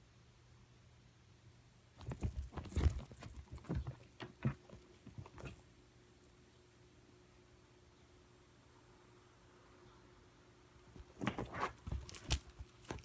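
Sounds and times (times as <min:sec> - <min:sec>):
cat thrashing thumps and knocks: 0:02.0 - 0:05.6, 0:11.0 - 0:13.0.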